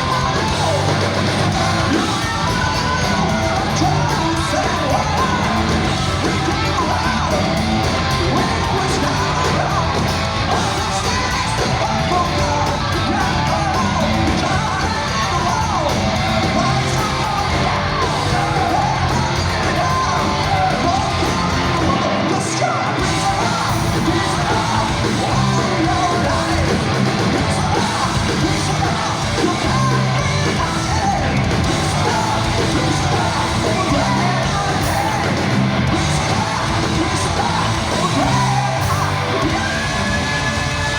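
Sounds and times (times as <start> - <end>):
heavy metal band playing live: 0.0 - 40.9.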